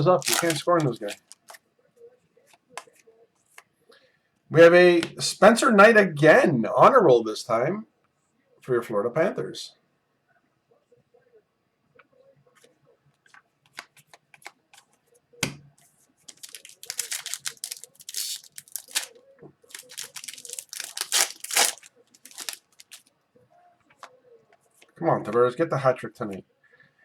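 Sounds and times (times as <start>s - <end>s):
plastic wrapper tearing and crinkling: 0.0s - 1.6s, 16.3s - 23.1s.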